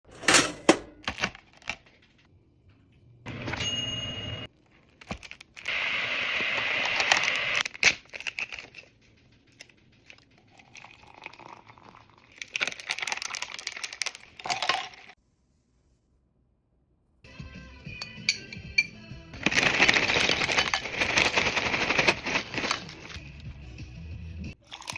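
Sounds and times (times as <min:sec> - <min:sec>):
food packaging crinkling: 0:04.6 - 0:15.2, 0:19.4 - 0:23.2.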